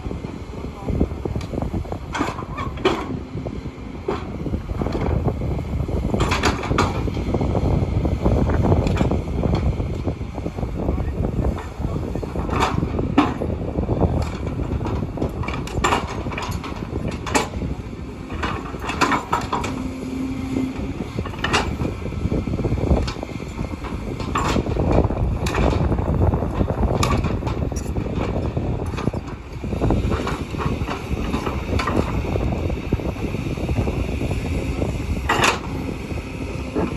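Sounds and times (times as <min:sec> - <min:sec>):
excavator engine rumbling: 0:00.0 - 0:36.9
machine clanks and knocks: 0:01.3 - 0:05.4, 0:06.0 - 0:07.4, 0:08.4 - 0:10.1, 0:10.8 - 0:22.1, 0:22.8 - 0:32.6, 0:33.7 - 0:36.9.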